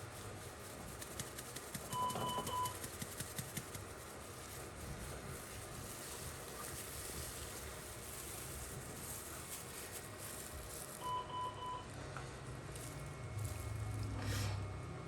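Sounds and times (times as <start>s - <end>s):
low steady hum and hiss: 0.0s - 15.0s
short electronic beeps: 2.0s - 2.8s.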